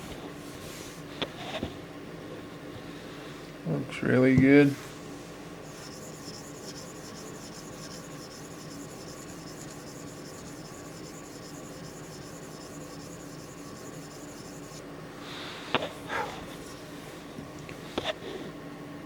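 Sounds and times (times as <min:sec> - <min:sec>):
sharpening stone scraping knife: 0:05.7 - 0:14.8.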